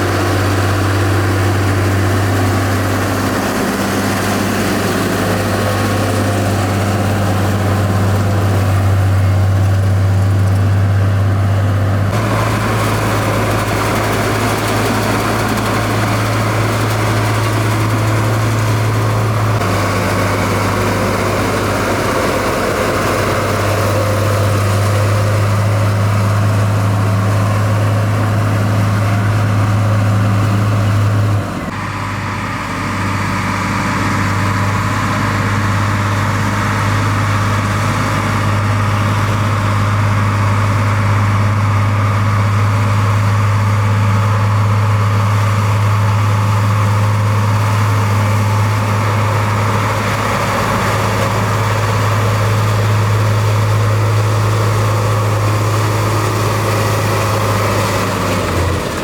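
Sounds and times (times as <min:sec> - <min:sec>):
diesel engine running: 0:00.0 - 0:59.0.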